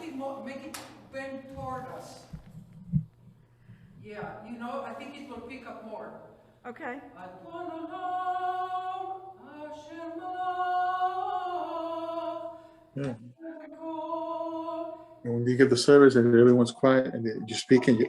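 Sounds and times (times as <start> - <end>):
person singing through microphone: 16.2 - 18.0.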